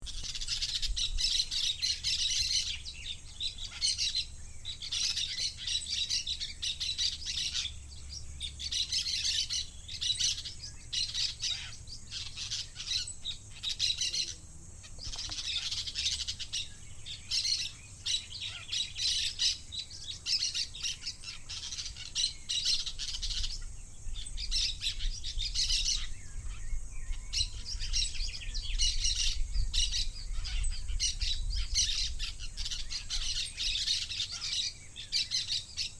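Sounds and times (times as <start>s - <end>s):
budgerigar chirping and warbling: 8.6s - 14.4s, 15.0s - 16.7s, 17.3s - 19.6s, 29.0s - 35.9s.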